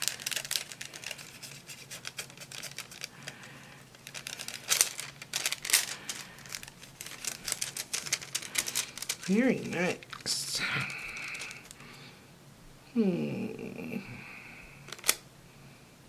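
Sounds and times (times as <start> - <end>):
foil crinkling: 0.0 - 12.0.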